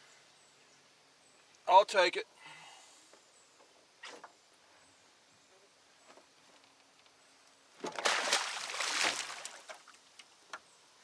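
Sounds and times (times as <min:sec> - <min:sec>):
water splashing against boat hull: 0:07.8 - 0:10.0.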